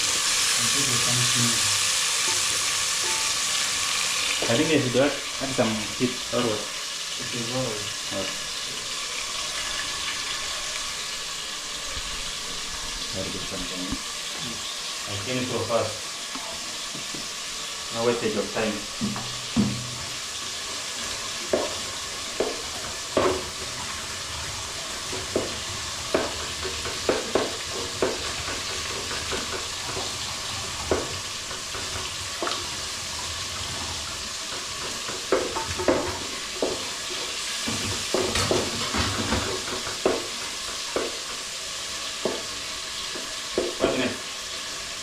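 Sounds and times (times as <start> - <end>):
food sizzling in a pot: 0.0 - 45.0
spoon scraping a pot: 2.1 - 3.7.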